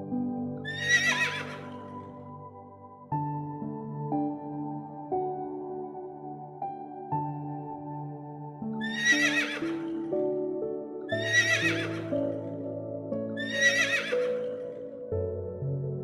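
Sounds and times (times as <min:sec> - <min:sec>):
soft ambient music: 0:00.0 - 0:16.0
horse whinnying: 0:00.7 - 0:01.9, 0:08.8 - 0:09.9, 0:11.2 - 0:12.1, 0:13.4 - 0:14.5.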